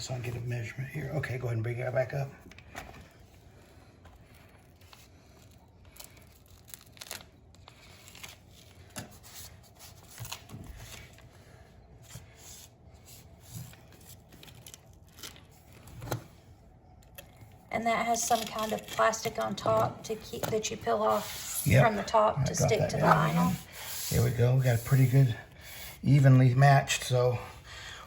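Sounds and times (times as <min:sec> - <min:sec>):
vinyl sheet rustling and crinkling: 0:02.6 - 0:11.6, 0:12.2 - 0:16.5, 0:17.4 - 0:25.3.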